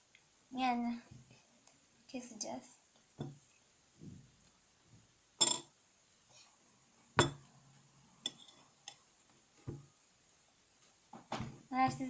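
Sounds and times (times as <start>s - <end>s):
utensil clinking against dishware: 7.2s - 7.4s.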